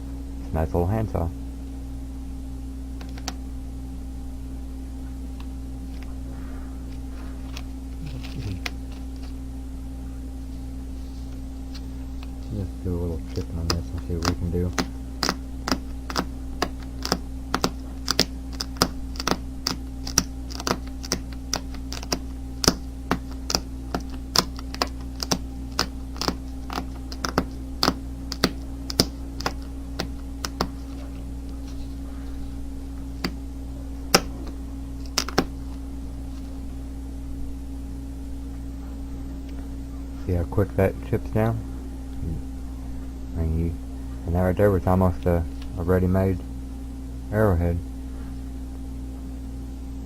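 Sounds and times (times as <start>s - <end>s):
steady low hum: 0.0s - 50.0s
flint knapping clicks: 13.3s - 31.0s, 35.0s - 35.5s.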